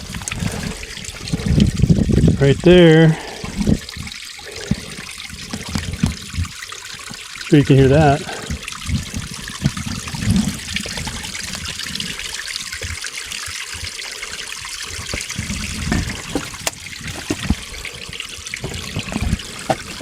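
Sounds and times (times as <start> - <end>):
water trickling: 0.0 - 20.0.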